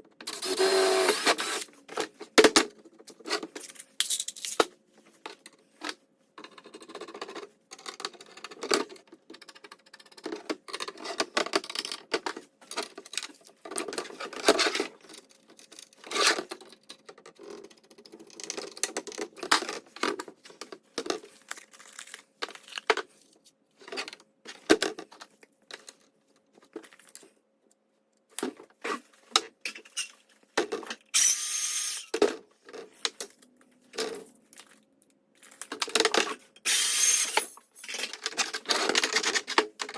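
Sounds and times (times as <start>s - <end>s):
hands handling small parts: 1.1s - 8.2s, 28.3s - 39.9s.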